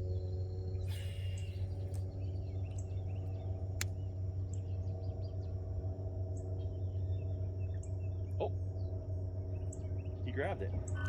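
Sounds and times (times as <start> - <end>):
high insect drone: 0.0 - 3.3
low hum: 0.0 - 11.0.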